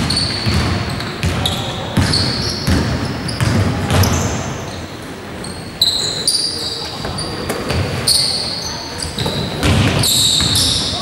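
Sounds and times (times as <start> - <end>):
basketball bouncing: 0.0 - 4.4, 9.1 - 10.8
sneakers squeaking: 0.0 - 11.0.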